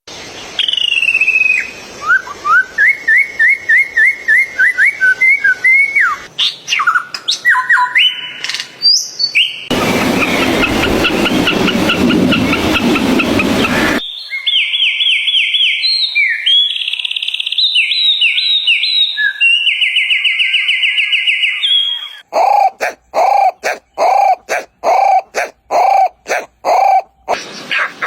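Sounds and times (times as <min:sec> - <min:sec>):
bird whistles: 0:00.6 - 0:22.2
bird chirps: 0:06.4 - 0:27.4.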